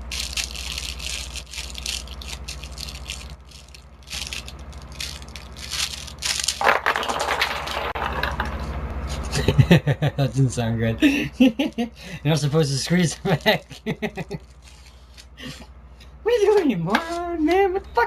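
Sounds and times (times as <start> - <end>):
gear rattling and crinkling: 0.0 - 8.0
scraping and crackling: 0.0 - 9.4.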